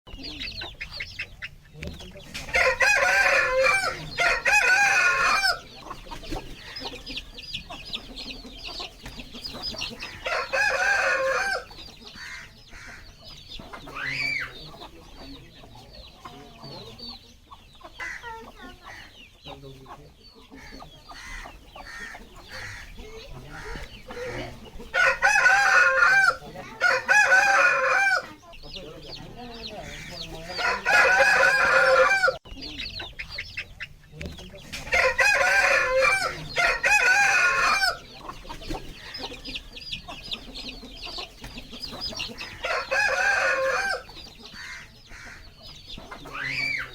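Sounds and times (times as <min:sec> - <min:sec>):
chicks peeping: 0:00.0 - 0:46.9
hens clucking: 0:00.1 - 0:46.9
rooster crowing: 0:02.5 - 0:05.7, 0:10.2 - 0:12.4, 0:23.6 - 0:28.3, 0:30.4 - 0:32.4, 0:34.9 - 0:38.0, 0:42.4 - 0:45.4.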